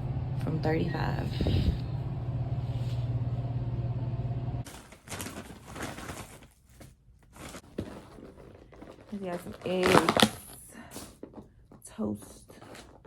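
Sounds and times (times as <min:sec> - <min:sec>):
elevator car humming: 0:00.0 - 0:04.6
rustling and handling noises: 0:04.6 - 0:13.0.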